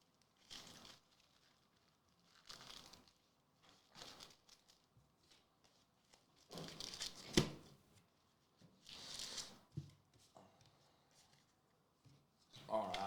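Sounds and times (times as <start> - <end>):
packaging rustling and crinkling: 0.1 - 7.5.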